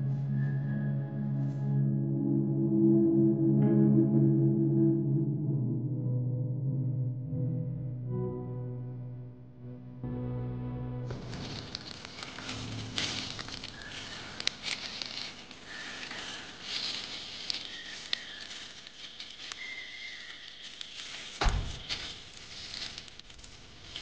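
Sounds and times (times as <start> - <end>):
crackling and rustling: 11.1 - 24.0.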